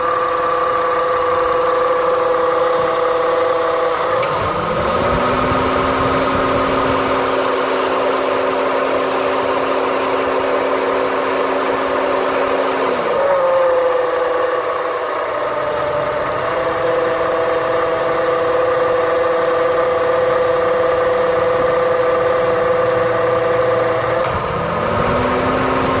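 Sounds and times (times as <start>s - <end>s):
car engine idling: 0.0s - 26.0s.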